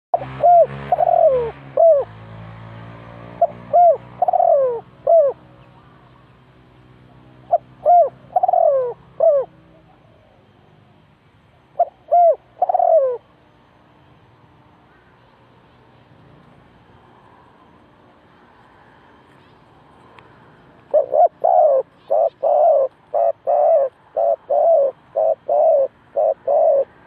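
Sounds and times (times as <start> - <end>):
dove cooing: 0.1 - 2.2, 3.3 - 6.2, 7.1 - 10.5, 11.7 - 13.4, 20.5 - 27.0.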